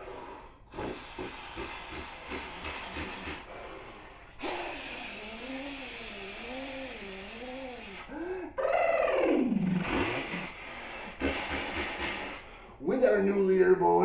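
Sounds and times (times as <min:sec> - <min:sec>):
loud wavering vocal hiss: 0:00.0 - 0:13.2
man imitating tractor chugging: 0:00.7 - 0:03.7, 0:11.2 - 0:13.0.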